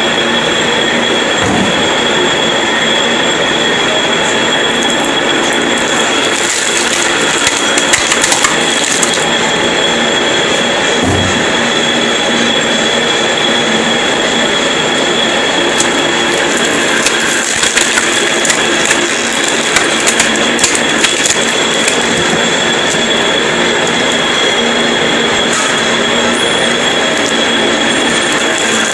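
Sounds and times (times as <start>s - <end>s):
lathe whining: 0.0s - 28.9s
wood cracking and snapping: 6.2s - 9.2s, 15.8s - 22.4s.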